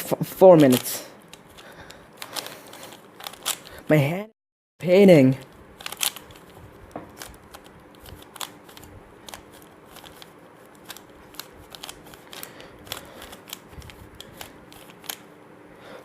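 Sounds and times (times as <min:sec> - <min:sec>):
puzzle cube layers clicking: 0:05.8 - 0:06.5, 0:07.2 - 0:15.2.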